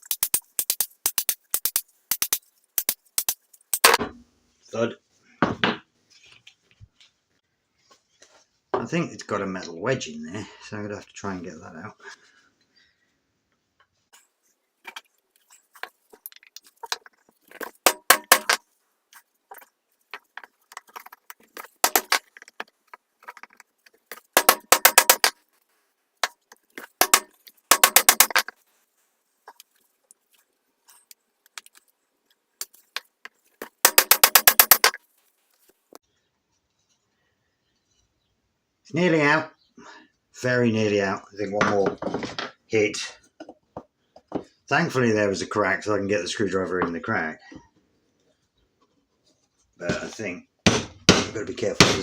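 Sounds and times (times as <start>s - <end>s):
hammer tapping on metal: 17.8s - 18.6s, 24.4s - 25.3s, 27.0s - 28.4s, 33.9s - 34.9s.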